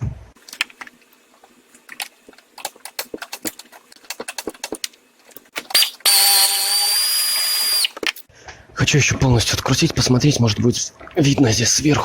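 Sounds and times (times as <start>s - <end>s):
power tool motor running: 5.7s - 8.0s.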